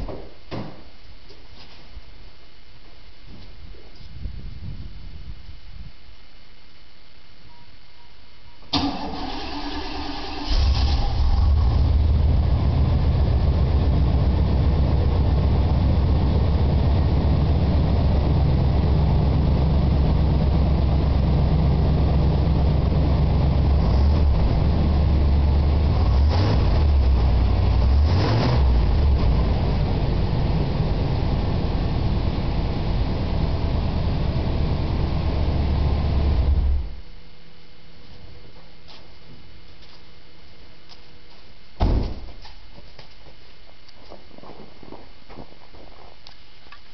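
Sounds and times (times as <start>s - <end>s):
car engine starting and idling: 8.7s - 37.0s
engine revs: 9.5s - 36.9s.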